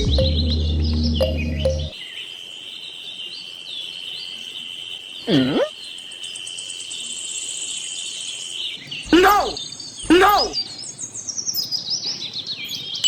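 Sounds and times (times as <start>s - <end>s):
faint chirps: 0.0s - 13.0s
high-pitched insect trill: 2.0s - 8.7s.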